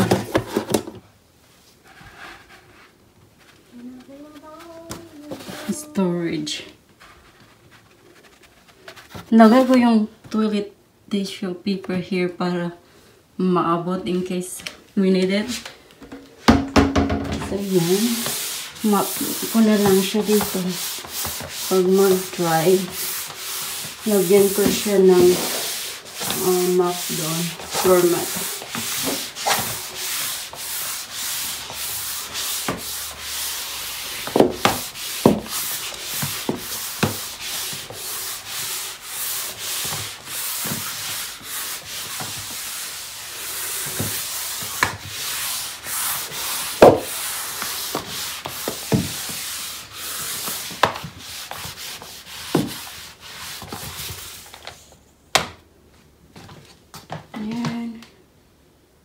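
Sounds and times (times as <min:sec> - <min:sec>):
mop rubbing on floor: 0:01.6 - 0:09.9, 0:15.4 - 0:55.0
sharp knocks: 0:16.5 - 0:17.5.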